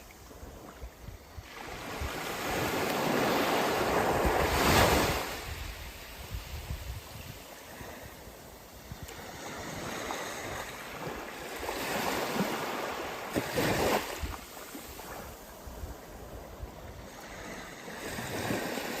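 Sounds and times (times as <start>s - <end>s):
rushing surf-like wash: 0.0s - 19.0s.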